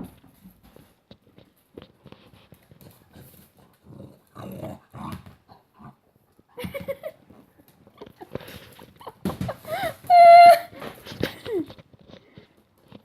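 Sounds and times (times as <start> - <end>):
dog growling: 3.8 - 6.0.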